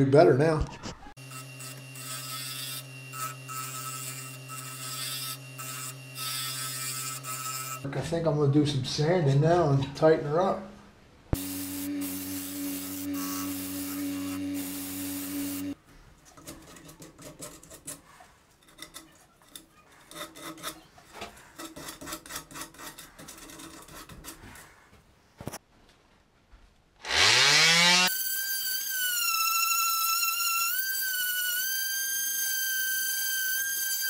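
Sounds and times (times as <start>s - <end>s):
wood lathe motor humming: 1.2s - 7.8s, 11.4s - 15.8s, 27.0s - 34.0s.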